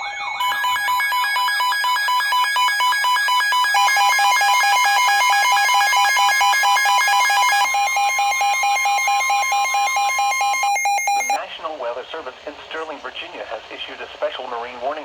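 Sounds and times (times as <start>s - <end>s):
shrill alternating alarm beeps: 0.0s - 11.4s
steady alarm tone: 0.0s - 11.4s.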